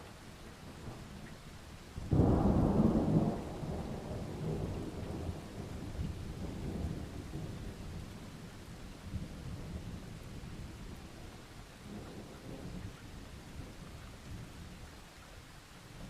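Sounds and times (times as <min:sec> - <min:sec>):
steady rain falling: 0:00.0 - 0:16.0
thunder rumbling: 0:02.0 - 0:08.3.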